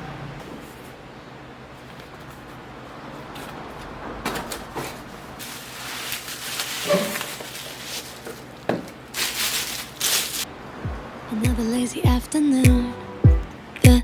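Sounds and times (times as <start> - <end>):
rustling: 1.7 - 10.5.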